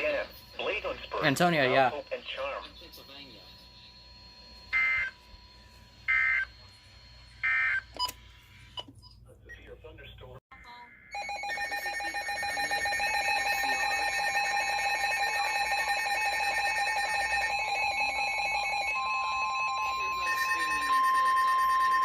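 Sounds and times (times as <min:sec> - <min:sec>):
rapid pulsing electronic beeping: 0:00.0 - 0:05.2
steady single-pitch warning tone: 0:00.0 - 0:08.9, 0:11.1 - 0:22.0.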